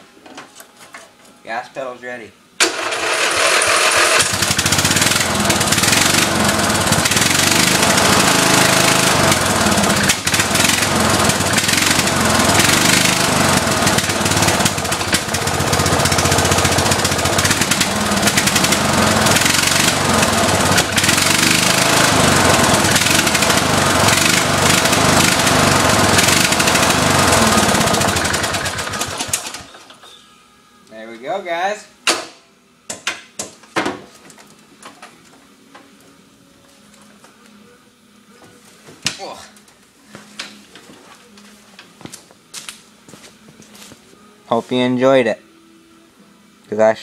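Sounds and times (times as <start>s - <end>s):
lawn mower engine running rough: 2.6s - 29.9s.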